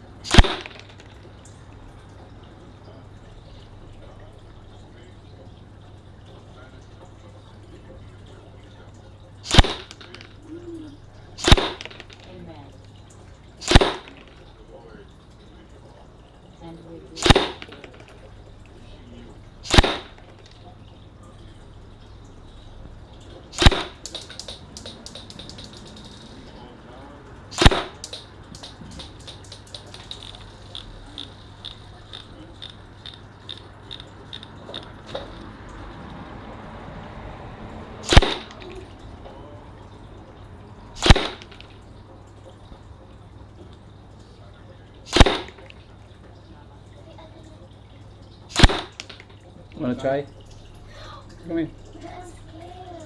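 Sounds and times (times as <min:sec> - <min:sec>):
airsoft rifle shots: 0:00.0 - 0:01.3, 0:09.4 - 0:10.6, 0:11.4 - 0:12.6, 0:13.6 - 0:14.5, 0:17.2 - 0:18.3, 0:19.6 - 0:20.8, 0:23.5 - 0:26.7, 0:27.5 - 0:35.4, 0:38.0 - 0:38.9, 0:41.0 - 0:41.8, 0:45.1 - 0:45.8, 0:48.5 - 0:49.3
light clicks: 0:00.0 - 0:46.7, 0:48.5 - 0:53.0.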